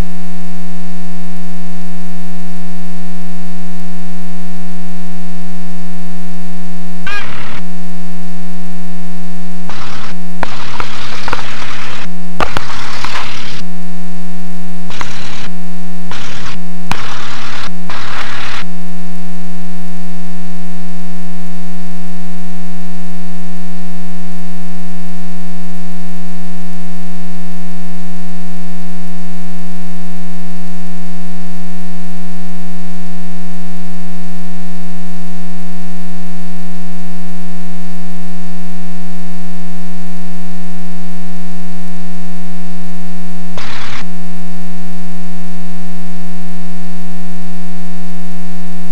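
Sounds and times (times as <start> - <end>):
electrical interference buzz: 0.0 - 25.1, 41.9 - 46.3
bursts of hiss-like noise: 7.1 - 7.7, 9.7 - 13.7, 14.9 - 18.7, 43.6 - 44.1.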